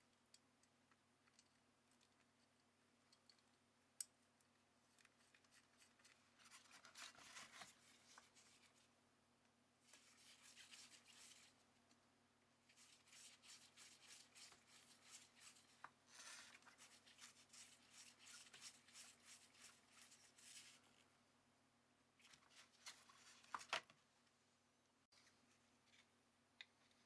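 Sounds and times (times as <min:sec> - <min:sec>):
faint brushing strokes: 0:05.2 - 0:09.0, 0:09.8 - 0:11.9, 0:12.6 - 0:21.2.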